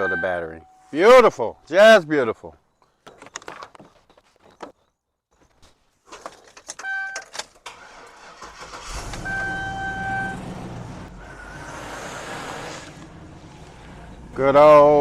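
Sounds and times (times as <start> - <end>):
short beep: 0.0 - 0.9, 9.2 - 10.4
car engine starting and running: 7.6 - 15.0.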